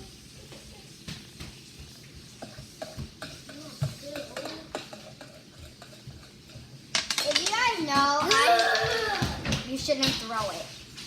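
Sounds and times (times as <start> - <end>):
slime stirred in a bowl: 1.6 - 6.9.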